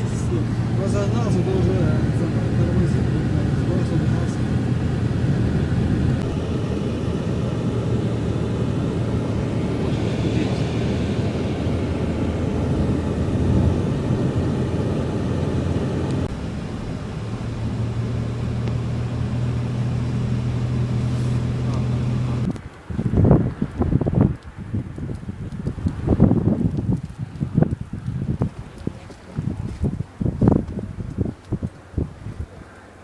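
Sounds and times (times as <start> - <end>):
steady low hum: 0.0 - 22.6
car engine and road noise: 0.0 - 32.3.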